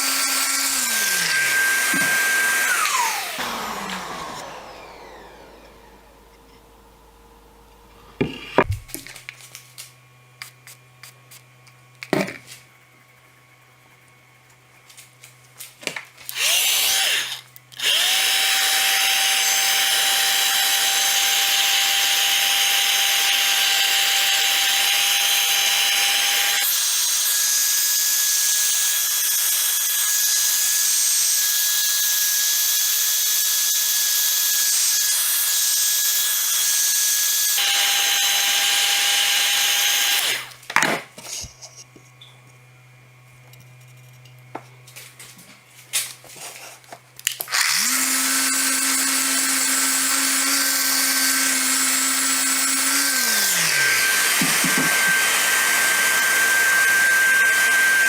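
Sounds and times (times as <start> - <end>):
power tool motor whining: 0.0 - 6.4, 16.3 - 40.6, 47.2 - 58.0.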